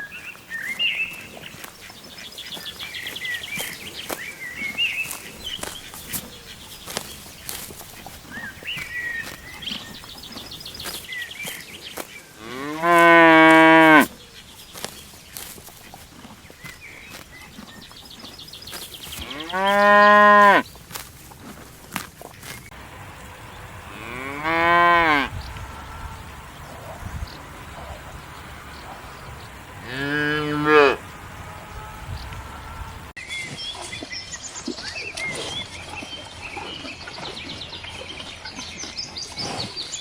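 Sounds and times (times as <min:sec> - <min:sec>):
small birds chirping: 0:00.0 - 0:40.0
cow mooing: 0:12.4 - 0:14.1, 0:19.2 - 0:20.6, 0:23.8 - 0:26.8, 0:29.8 - 0:33.1.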